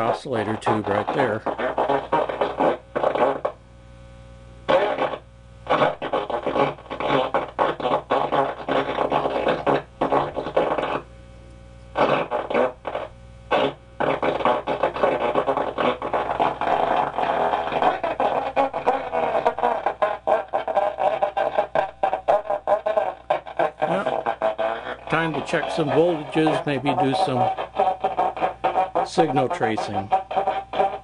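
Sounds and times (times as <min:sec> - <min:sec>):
noisy radio broadcast: 0:00.0 - 0:31.0
steady hum: 0:00.0 - 0:31.0.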